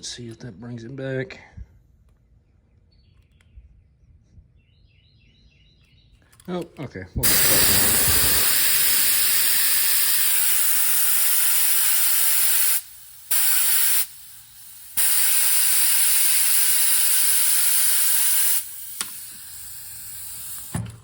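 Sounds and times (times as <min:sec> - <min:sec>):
compressed air hissing into tire: 0:07.2 - 0:21.0.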